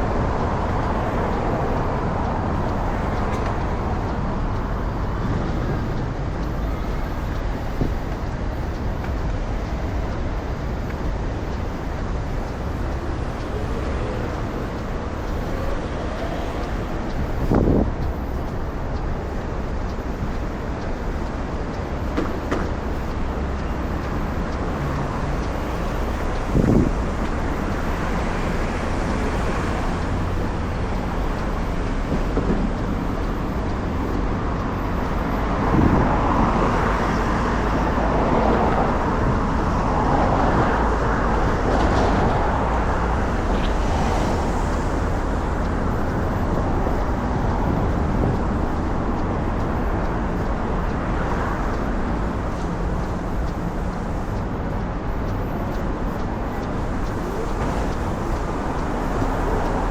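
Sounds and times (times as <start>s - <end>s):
rumble of passing road vehicles: 0.0s - 59.9s.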